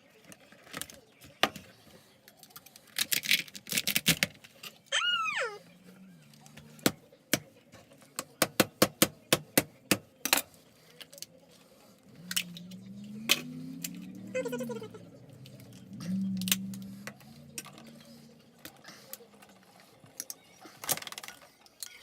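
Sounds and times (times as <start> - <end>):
low hum: 12.0 - 18.8.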